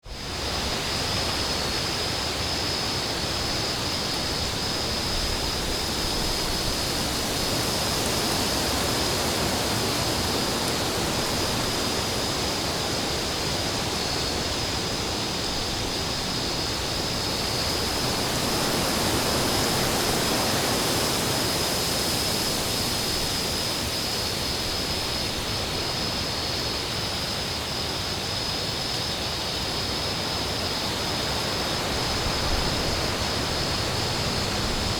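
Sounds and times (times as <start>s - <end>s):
wind blowing: 30.9s - 34.9s.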